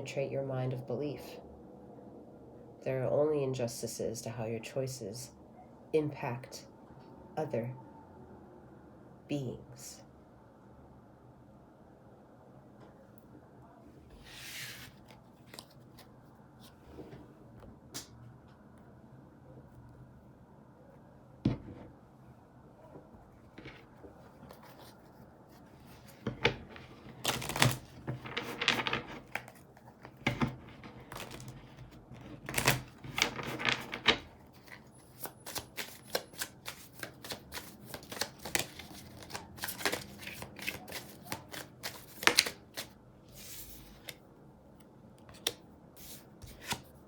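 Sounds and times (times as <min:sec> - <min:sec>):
cards being shuffled: 0:14.1 - 0:16.1, 0:23.6 - 0:44.2, 0:45.2 - 0:47.0.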